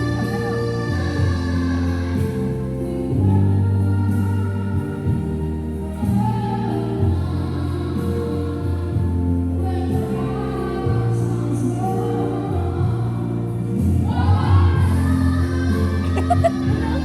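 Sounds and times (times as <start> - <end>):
choir-like singing: 5.9 - 17.0.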